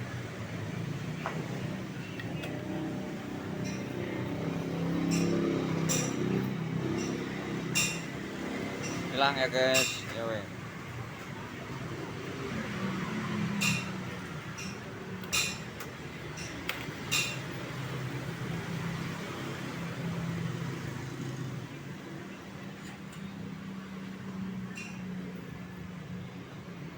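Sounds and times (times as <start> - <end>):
sharp metallic clinks: 5.0 - 8.1.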